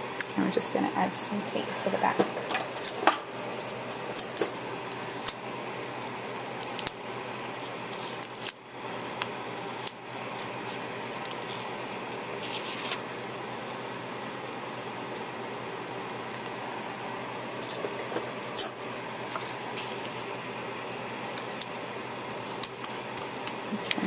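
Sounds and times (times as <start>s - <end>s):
faint steady hum: 0.0s - 24.0s
tape clicks and rustles: 2.4s - 13.0s, 17.6s - 24.0s.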